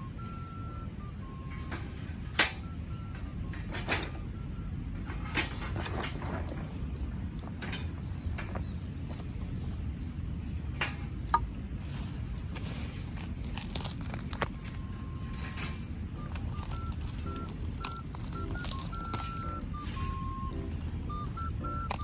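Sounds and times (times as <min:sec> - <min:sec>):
low outdoor rumble: 0:00.0 - 0:22.0
melody of short high notes: 0:16.2 - 0:22.0.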